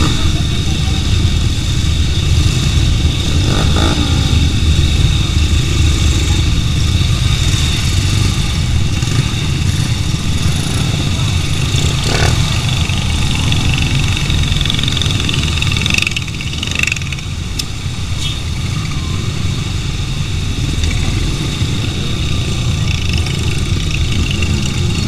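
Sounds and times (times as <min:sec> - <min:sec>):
motorcycle engine idling: 0:08.2 - 0:17.3.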